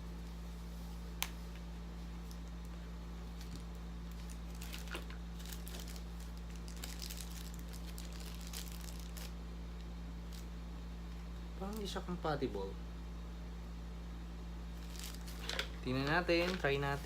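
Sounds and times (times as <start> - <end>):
steady low hum: 0.0 - 17.0
plastic packaging crinkling: 3.3 - 9.4, 14.8 - 17.0.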